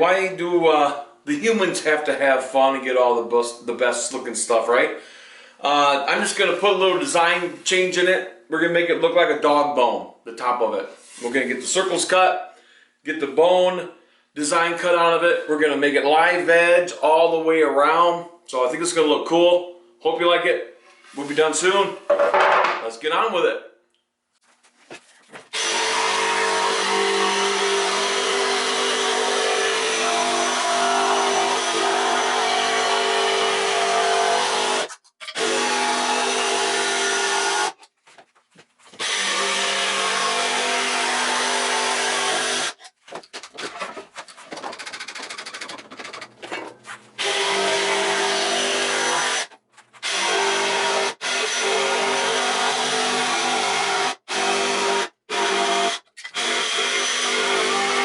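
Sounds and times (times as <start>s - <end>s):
power tool motor running: 25.6s - 37.7s, 39.0s - 42.8s, 47.2s - 58.0s
rapid rattling: 43.0s - 46.5s.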